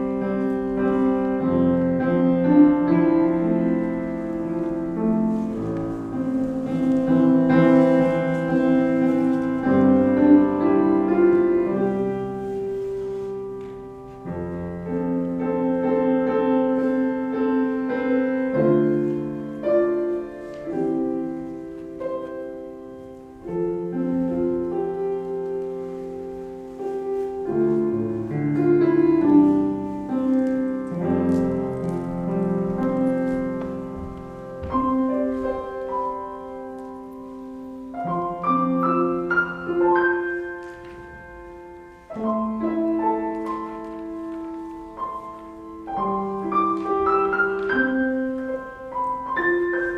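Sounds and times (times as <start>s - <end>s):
slow solo piano: 0.0s - 49.9s.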